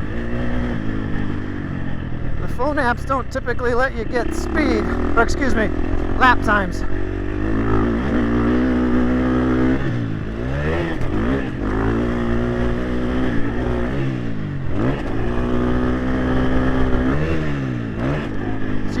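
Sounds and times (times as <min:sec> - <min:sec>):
motocross bike engine revving: 0:00.0 - 0:19.0.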